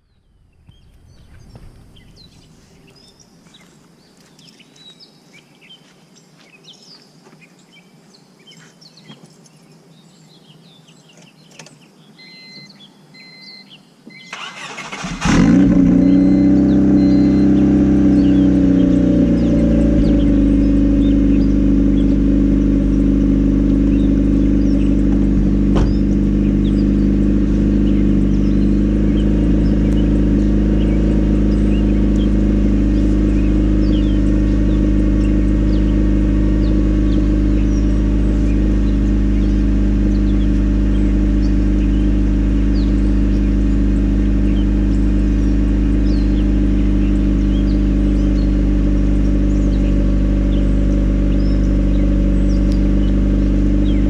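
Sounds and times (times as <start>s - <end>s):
car engine idling: 14.4s - 54.0s.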